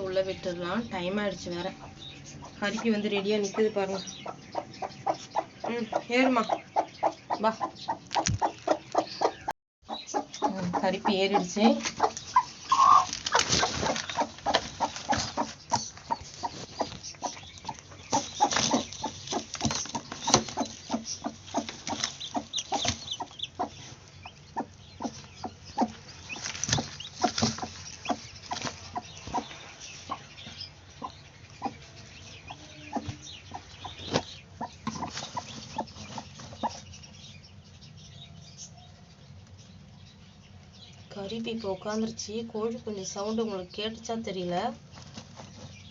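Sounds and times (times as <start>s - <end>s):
hen clucking low: 2.5s - 13.1s
hen rustling in nest: 10.2s - 37.2s.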